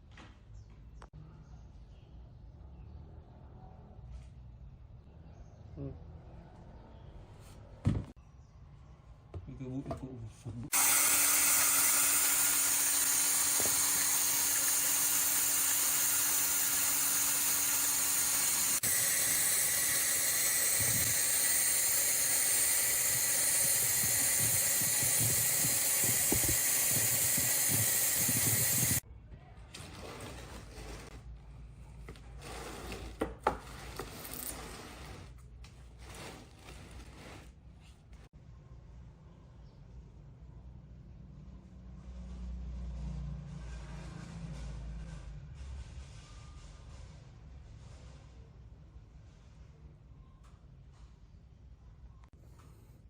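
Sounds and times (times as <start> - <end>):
air hissing: 12.1 - 29.0.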